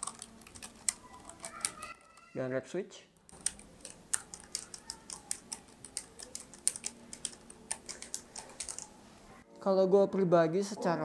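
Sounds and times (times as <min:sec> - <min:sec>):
mechanical keyboard typing: 0:00.0 - 0:02.3, 0:03.3 - 0:09.0.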